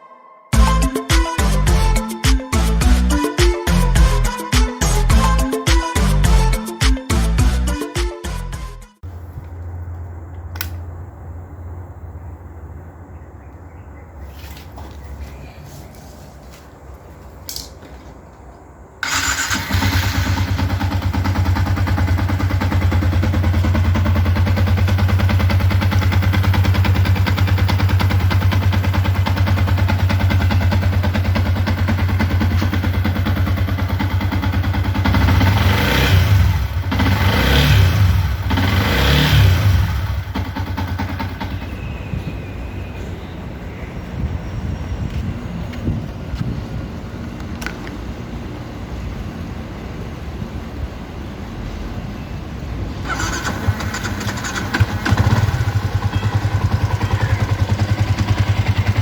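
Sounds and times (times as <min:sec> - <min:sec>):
motorcycle engine starting and idling: 0:09.0 - 0:11.2, 0:17.4 - 0:43.0, 0:53.0 - 0:59.0
motorcycle engine revving: 0:19.0 - 0:42.3, 0:53.0 - 0:59.0.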